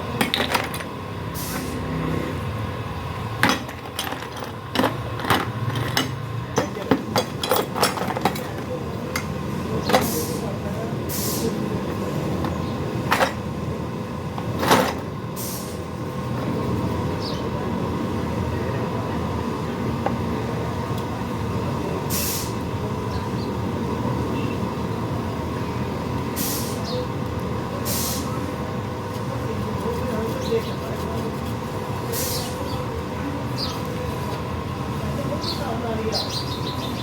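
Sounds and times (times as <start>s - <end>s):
short hisses: 27.9s - 28.3s.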